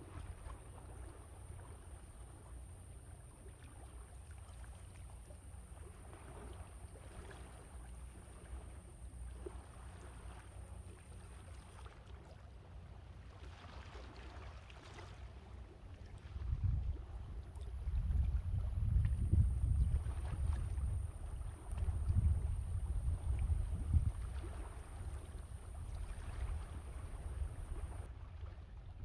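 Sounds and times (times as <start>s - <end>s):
wind rumble on microphone: 16.1s - 29.0s
sea waves washing: 24.2s - 28.1s.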